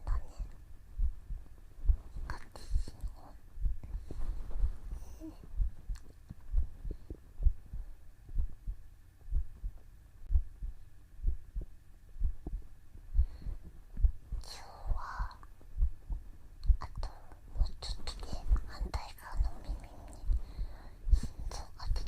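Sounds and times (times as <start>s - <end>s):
human heartbeat thumps: 0.9s - 17.0s, 20.2s - 21.5s.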